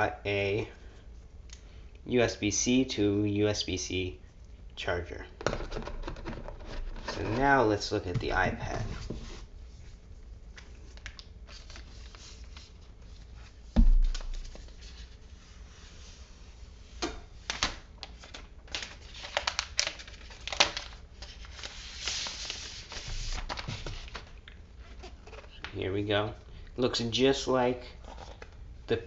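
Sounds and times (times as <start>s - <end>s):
loud thump: 13.8s - 14.2s
plastic wrapping crinkling and tearing: 17.5s - 24.4s.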